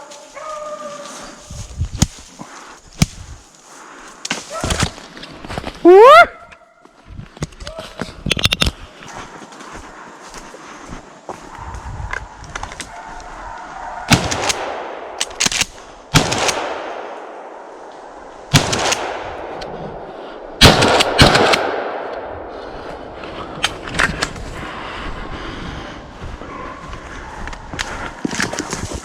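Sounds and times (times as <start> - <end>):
gunshots echoing: 14.1 - 17.8, 18.5 - 22.5.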